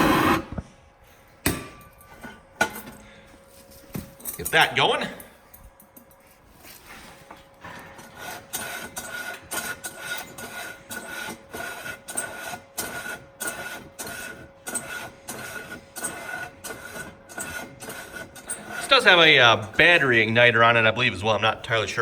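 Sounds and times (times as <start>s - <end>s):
rasping mechanical strokes: 0.0s - 0.7s, 6.8s - 20.5s
steady hum: 0.0s - 22.0s.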